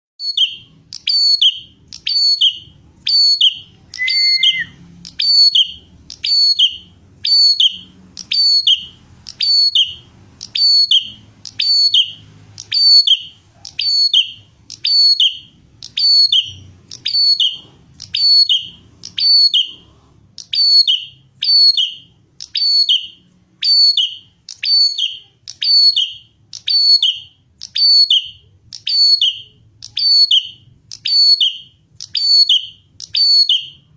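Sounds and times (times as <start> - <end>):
whistle-like tone: 0.2 - 7.8
bird calling high chirps: 0.2 - 33.9.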